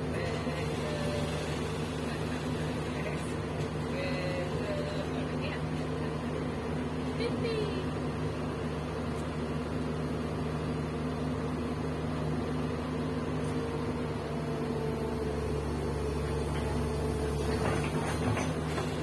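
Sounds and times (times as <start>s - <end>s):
excavator diesel engine humming: 0.0s - 19.0s.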